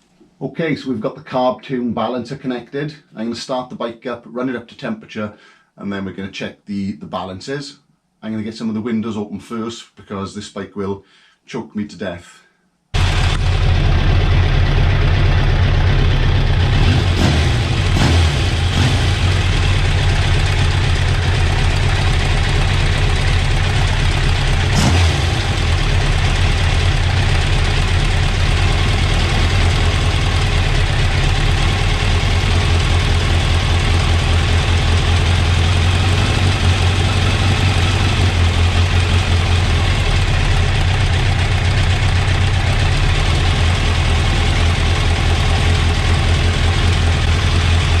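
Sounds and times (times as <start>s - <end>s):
motorcycle engine idling: 13.0s - 48.0s.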